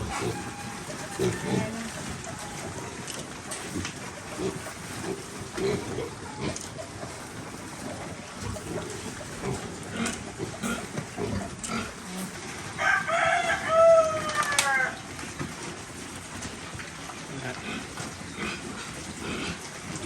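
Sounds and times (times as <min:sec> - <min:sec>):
rooster crowing: 0:00.0 - 0:03.0, 0:12.8 - 0:15.0
low farmyard sounds: 0:00.0 - 0:20.0.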